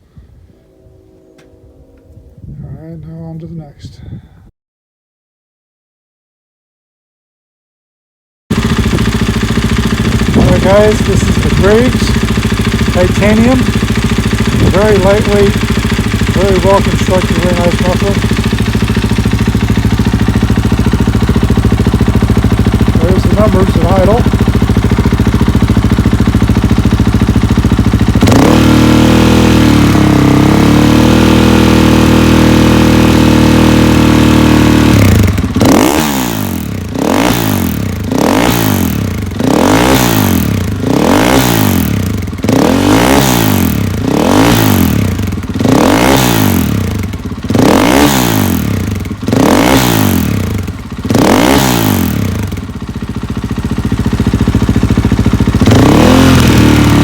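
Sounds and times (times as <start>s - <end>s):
dirt bike engine revving: 8.5s - 57.0s.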